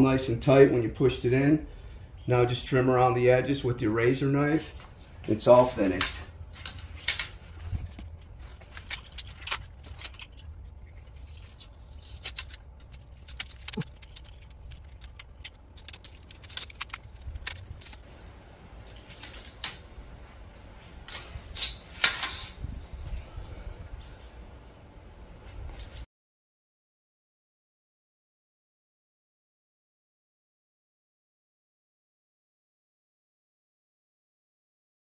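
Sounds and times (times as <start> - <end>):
rustling of things handled: 4.4 - 23.7, 25.3 - 26.1
steady low rumble: 4.7 - 21.6.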